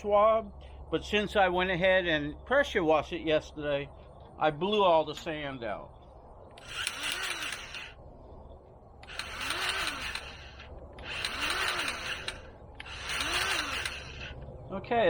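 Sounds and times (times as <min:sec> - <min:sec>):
cordless grease gun motor whining: 0:06.5 - 0:08.0, 0:09.0 - 0:14.5.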